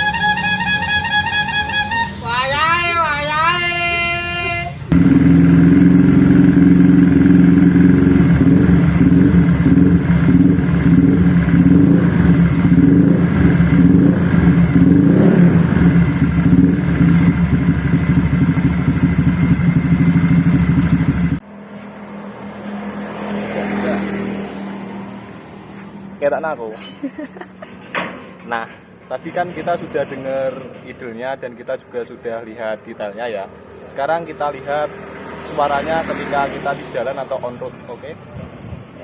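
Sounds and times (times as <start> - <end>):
scooter engine idling: 4.9 - 21.4.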